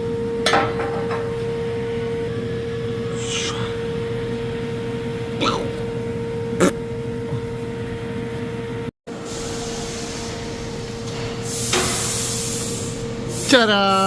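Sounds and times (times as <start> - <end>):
hiss: 9.1 - 14.0.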